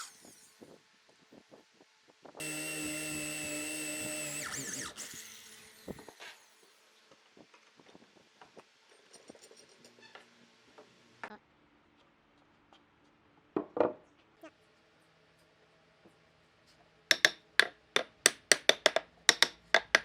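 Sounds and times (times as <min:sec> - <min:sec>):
power tool motor running: 0:02.4 - 0:06.5.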